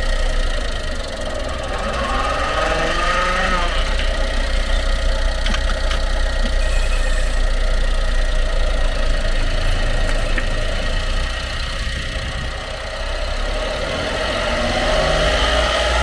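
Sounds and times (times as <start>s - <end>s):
truck engine running: 0.0s - 16.0s
rising whine: 0.3s - 4.9s.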